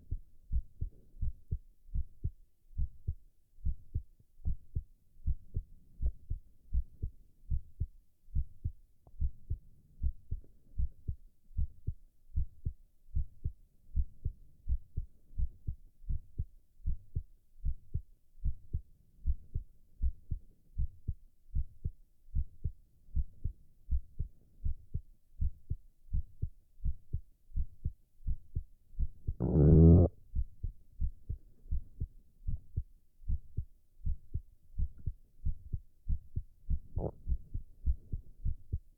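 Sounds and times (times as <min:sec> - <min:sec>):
heartbeat thumping: 0:00.0 - 0:38.9
stomach growl: 0:29.4 - 0:30.1, 0:36.9 - 0:37.4.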